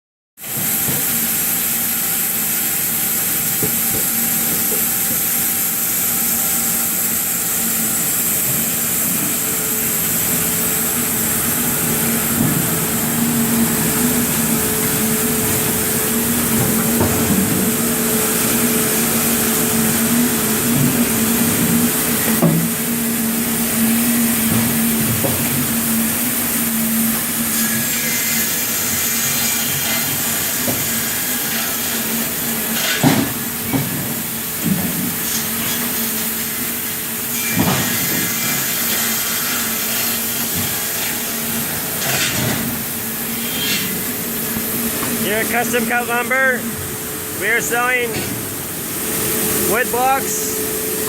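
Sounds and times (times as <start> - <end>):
sawmill machinery humming: 0.4 - 51.0
strong high hiss: 0.6 - 29.6, 42.6 - 51.0.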